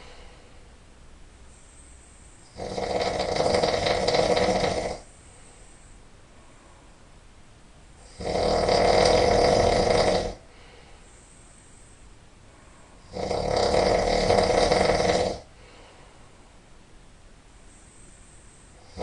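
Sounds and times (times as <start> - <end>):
person snoring loudly: 2.5 - 5.1, 8.0 - 10.4, 13.0 - 15.5.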